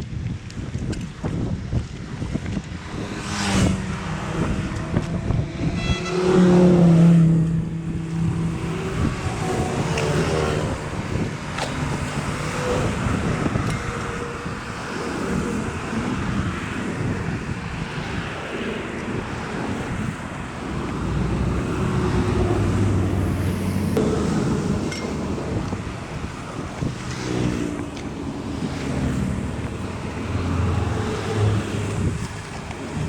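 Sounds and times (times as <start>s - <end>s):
wind buffeting microphone: 0.0s - 33.0s
pitched hum: 2.8s - 12.9s.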